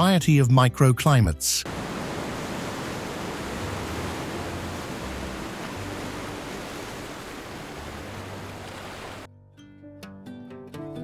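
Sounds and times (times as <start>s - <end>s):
steady rushing noise: 1.7s - 9.3s.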